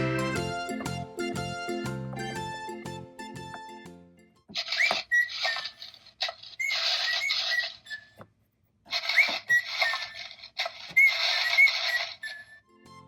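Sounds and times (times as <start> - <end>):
toy electronic hissing with chirps: 4.6 - 8.2, 8.9 - 12.6.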